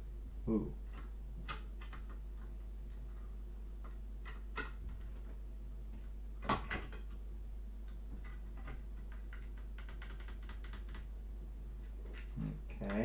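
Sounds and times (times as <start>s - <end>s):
steady low hum: 0.0s - 6.4s
small clicks and knocks of parts: 0.9s - 13.0s.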